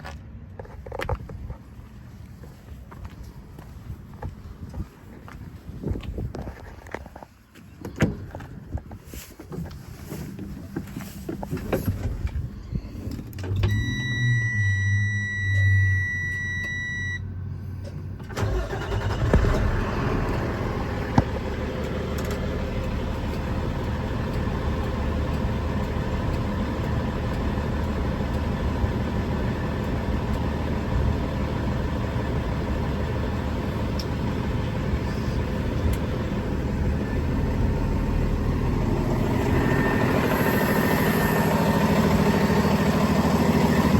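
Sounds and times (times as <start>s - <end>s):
diesel engine cranking and running: 7.9s - 43.9s
steady high beep: 13.7s - 17.3s.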